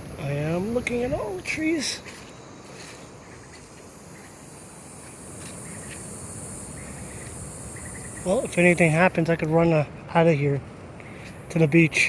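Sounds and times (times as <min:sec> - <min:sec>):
high insect buzz: 0:00.0 - 0:09.2
steady hiss: 0:00.0 - 0:12.0.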